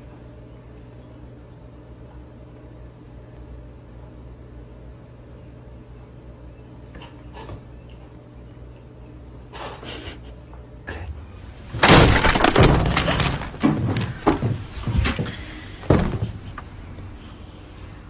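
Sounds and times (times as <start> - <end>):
loud crash of something breaking: 11.7 - 14.6.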